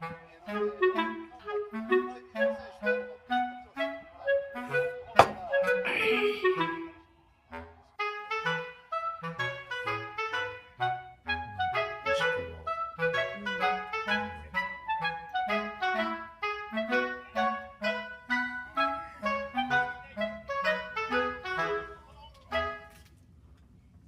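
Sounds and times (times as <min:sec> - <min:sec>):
woodwind-like melody: 0:00.0 - 0:23.1.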